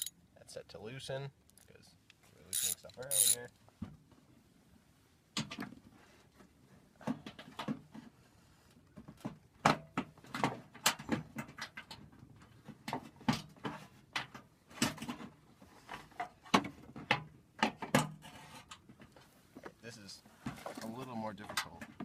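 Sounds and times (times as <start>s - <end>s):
socket ratchet clicking: 2.6s - 3.4s.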